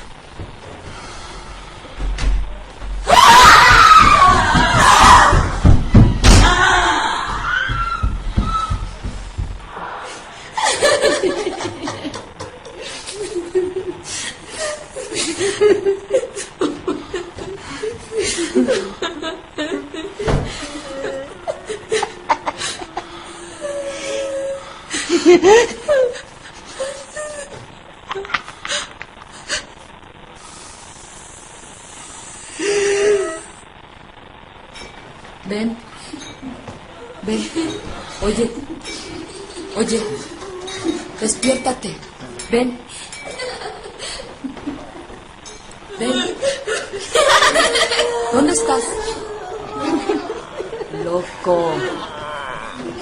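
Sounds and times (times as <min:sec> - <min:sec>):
steady hiss: 0:00.0 - 0:03.7, 0:05.3 - 0:53.0
person chuckling: 0:10.4 - 0:29.0, 0:43.2 - 0:45.2, 0:45.9 - 0:53.0.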